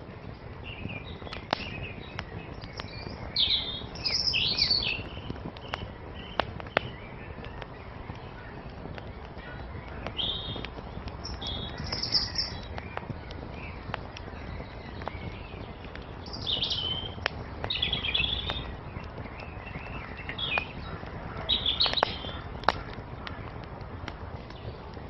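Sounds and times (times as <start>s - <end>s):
small birds chirping: 0.0s - 25.0s
wood fire crackling and popping: 0.0s - 25.0s.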